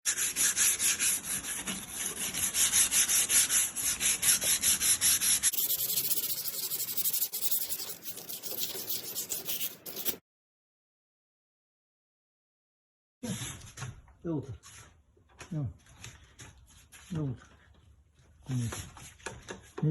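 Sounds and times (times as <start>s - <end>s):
sandpaper scraping plastic: 0.1s - 10.2s.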